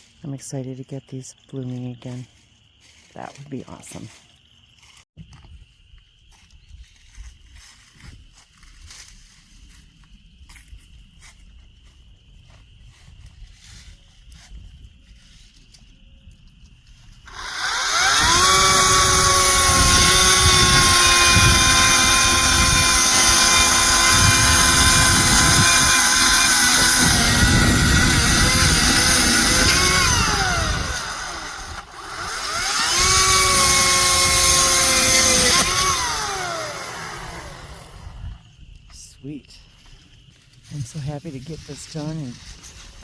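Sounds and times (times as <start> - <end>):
chainsaw revving: 17.3 - 38.3.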